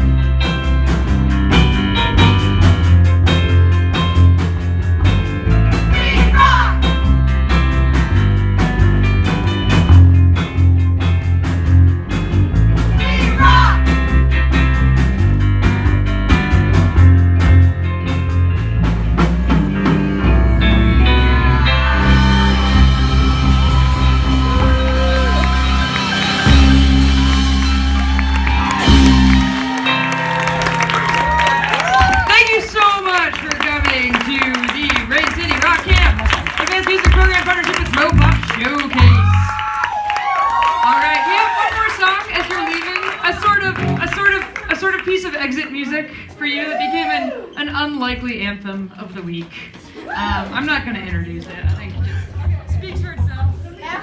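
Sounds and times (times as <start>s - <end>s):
electric guitar: 0.0s - 32.3s
drum kit beat: 0.0s - 45.5s
bass: 0.0s - 54.0s.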